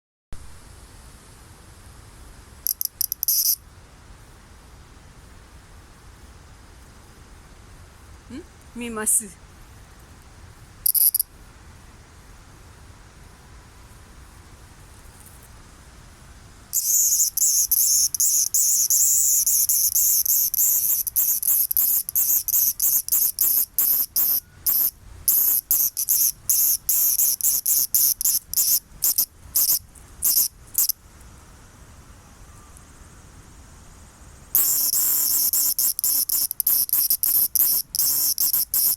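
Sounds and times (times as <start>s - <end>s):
cicada buzzing: 2.6s - 3.6s, 10.8s - 11.3s, 16.7s - 31.0s, 34.4s - 38.9s.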